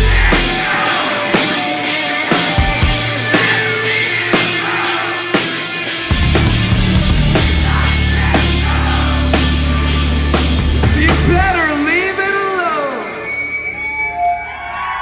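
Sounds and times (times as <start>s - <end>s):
drum hits: 0.0s - 1.6s, 6.0s - 11.6s
rock band playing live: 0.0s - 15.0s
heavy low bass chord: 6.2s - 11.5s.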